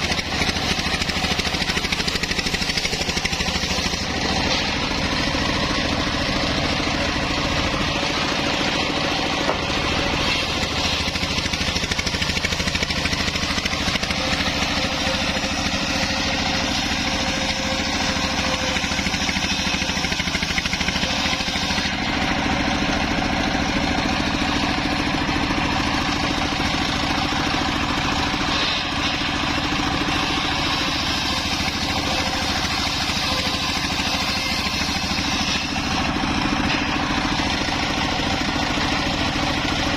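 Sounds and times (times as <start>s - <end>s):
circular saw engine running: 0.0s - 39.9s.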